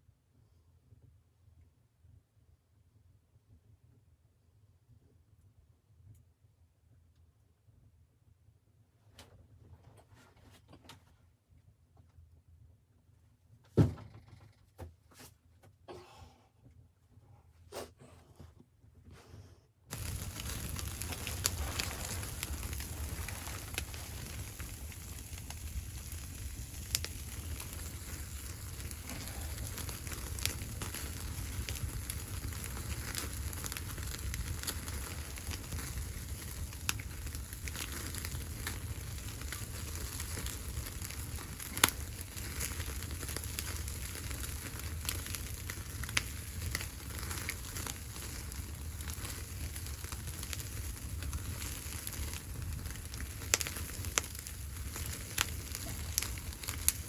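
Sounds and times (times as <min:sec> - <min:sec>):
fire popping: 0:19.9 - 0:57.0
wood fire crackling: 0:19.9 - 0:57.0.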